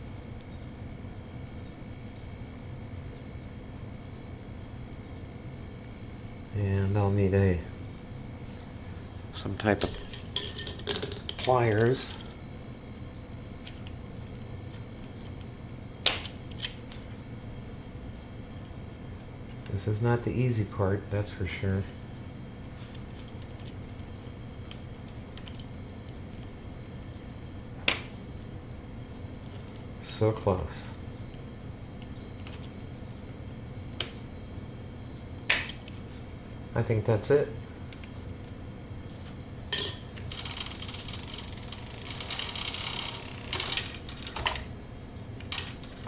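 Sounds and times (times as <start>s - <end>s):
bicycle freewheel clicking: 40.3s - 44.6s.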